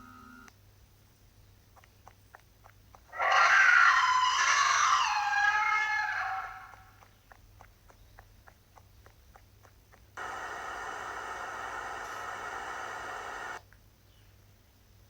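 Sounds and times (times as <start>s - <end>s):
faint rapid ticking: 6.9s - 13.6s
harsh static buzzing drone: 10.2s - 13.6s.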